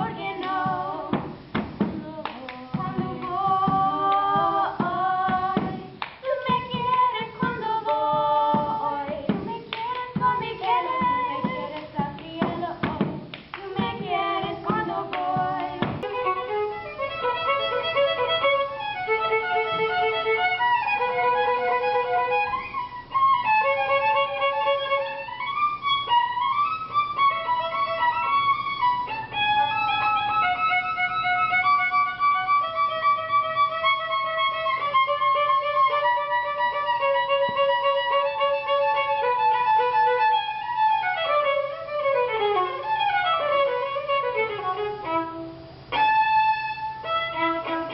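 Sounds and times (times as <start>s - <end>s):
violin slow melody: 0.0s - 1.2s, 13.6s - 47.9s.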